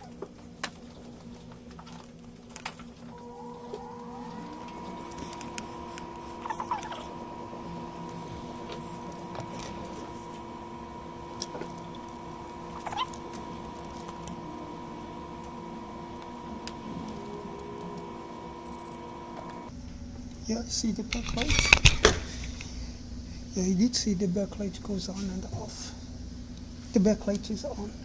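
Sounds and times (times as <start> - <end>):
high electrical whine: 0.0 - 19.8
short squeaks and clicks: 1.7 - 19.7
low hum: 3.0 - 20.4.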